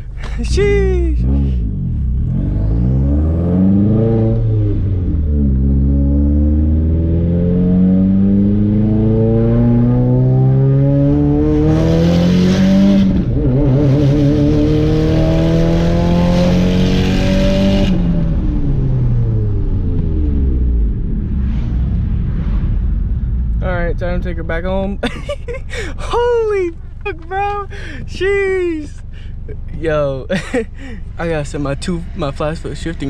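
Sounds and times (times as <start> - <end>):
car engine revving hard: 1.1 - 18.3.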